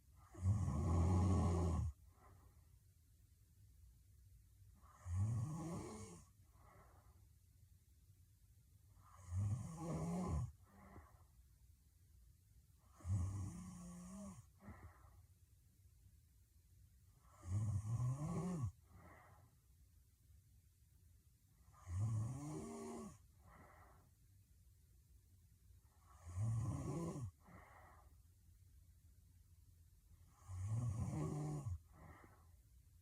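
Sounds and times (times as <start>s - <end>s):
woman snoring: 0.2s - 2.0s, 4.8s - 6.9s, 9.0s - 11.2s, 12.8s - 15.0s, 17.2s - 19.3s, 21.7s - 23.8s, 26.0s - 27.8s, 30.3s - 32.4s
soft breath out: 14.5s - 15.4s, 23.3s - 24.2s, 27.4s - 28.3s, 31.8s - 32.6s.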